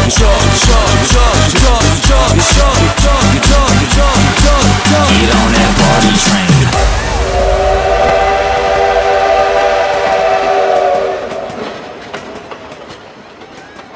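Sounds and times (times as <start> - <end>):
train rumbling: 0.0 - 13.9
train horn: 6.7 - 12.5.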